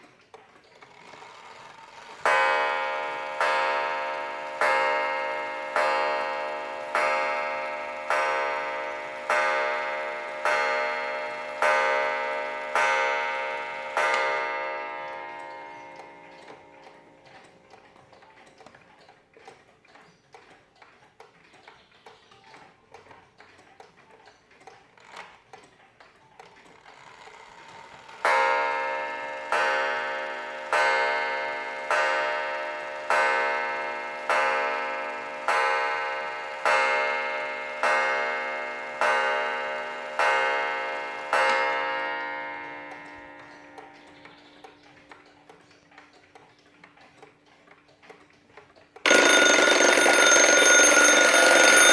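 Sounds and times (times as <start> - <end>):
alarm clock ticking: 2.2 - 18.8, 28.2 - 45.6, 49.0 - 51.9
clock striking ringing blows: 2.3 - 17.2, 28.3 - 44.1, 49.0 - 51.9.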